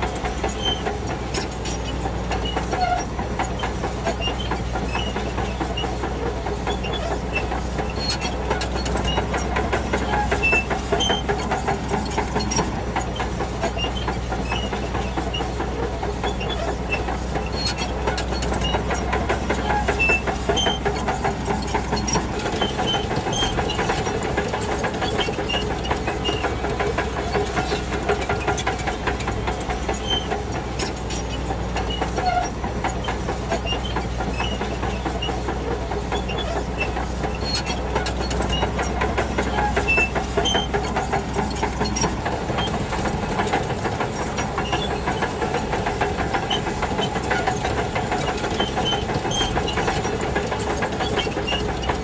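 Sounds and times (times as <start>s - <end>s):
bulldozer diesel engine under load: 0.0s - 52.0s
steel tracks clanking: 0.0s - 52.0s.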